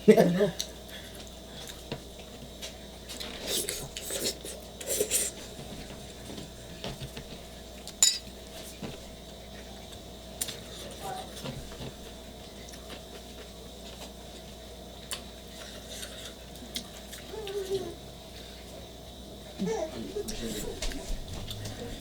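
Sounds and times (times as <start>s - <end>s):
sharp clink of utensil: 8.0s - 8.2s.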